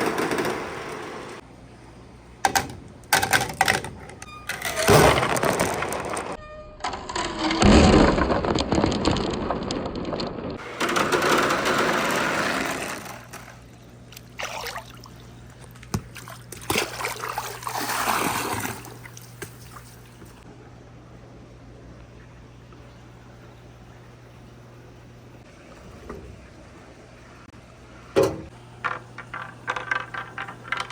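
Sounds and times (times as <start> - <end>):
marbles rolling: 4.5 - 13.6, 28.8 - 30.9
water splashing down wooden channel: 15.8 - 19.8.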